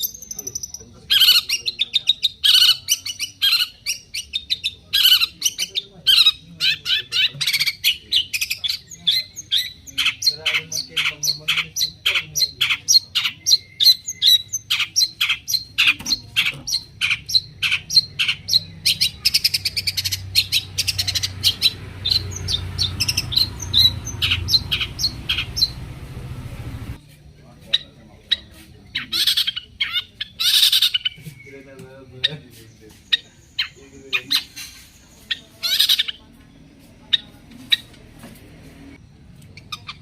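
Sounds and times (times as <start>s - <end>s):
shrike harsh chattering calls: 0.0s - 27.0s, 27.6s - 36.4s
low hum: 21.3s - 27.0s.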